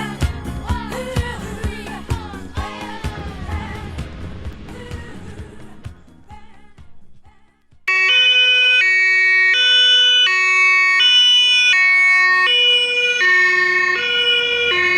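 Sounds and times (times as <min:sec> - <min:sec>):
two-tone siren: 0:07.9 - 0:14.9.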